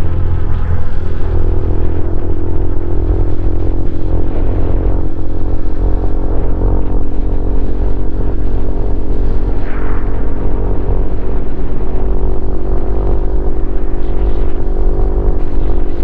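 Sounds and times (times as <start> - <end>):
motorcycle engine running steadily: 0.0 - 16.0.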